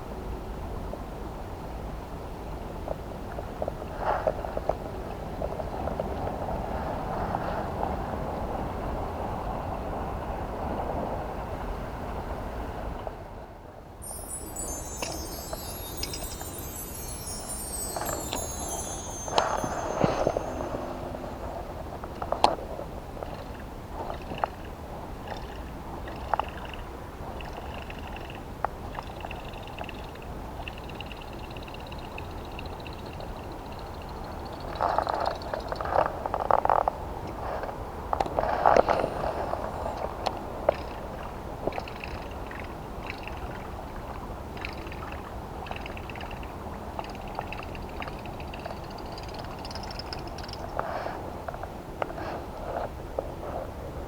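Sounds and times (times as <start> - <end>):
metallic jingle and clicking: 14.0 - 21.0.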